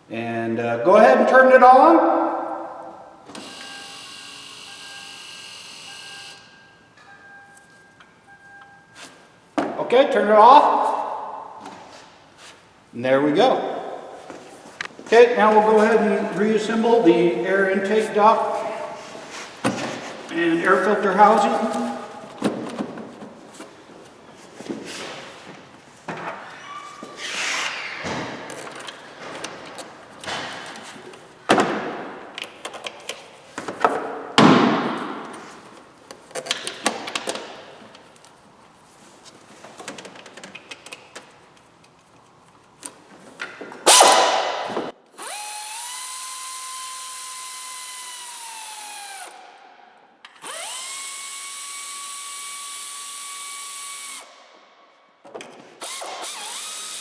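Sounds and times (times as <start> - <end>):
power driver whine: 3.3 - 6.7.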